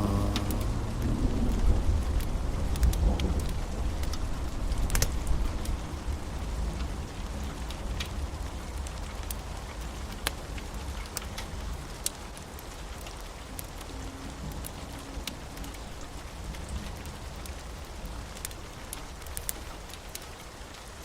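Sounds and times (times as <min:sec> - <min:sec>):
low storm rumble: 0:00.0 - 0:12.0
rain falling on a roof: 0:00.0 - 0:21.0.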